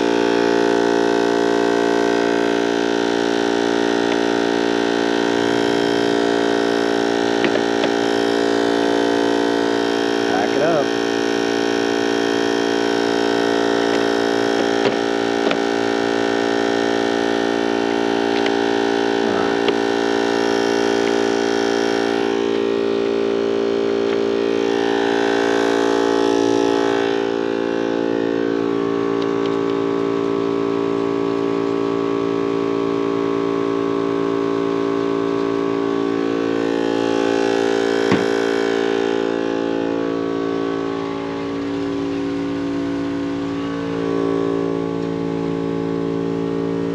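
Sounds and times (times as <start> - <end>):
motor running steadily: 0.0 - 46.9.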